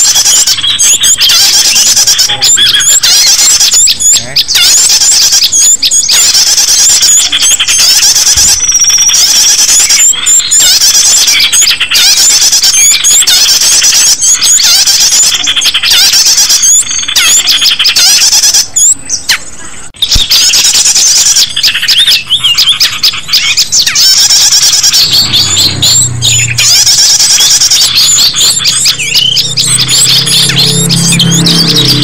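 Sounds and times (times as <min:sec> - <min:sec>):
small birds chirping: 0:00.0 - 0:32.0
low hum: 0:25.0 - 0:32.0.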